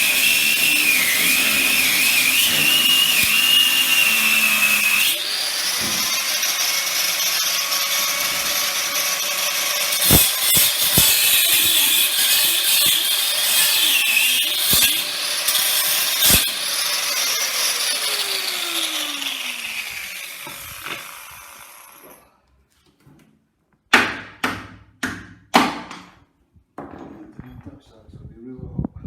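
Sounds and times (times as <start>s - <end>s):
power tool grinding through metal: 0.0s - 22.3s.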